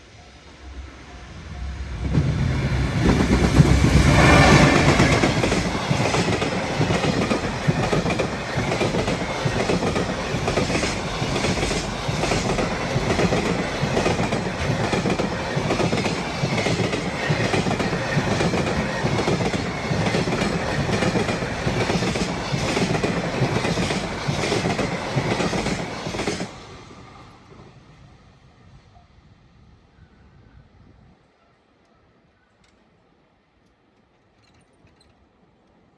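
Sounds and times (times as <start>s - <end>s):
locomotive rushing past: 0.0s - 28.5s.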